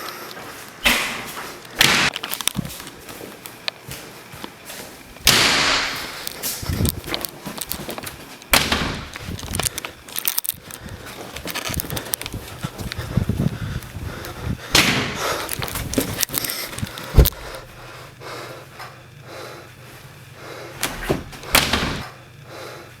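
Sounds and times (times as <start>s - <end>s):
knocks and scuffs: 0.4s - 17.8s.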